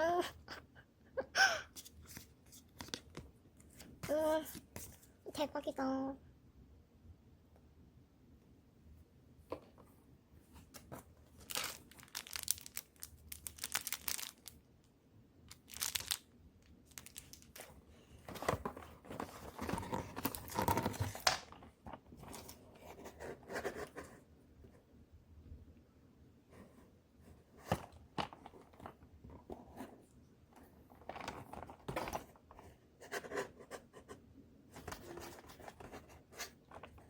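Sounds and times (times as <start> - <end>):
packaging tearing and crinkling: 11.4 - 14.6, 15.5 - 16.3, 16.9 - 17.7.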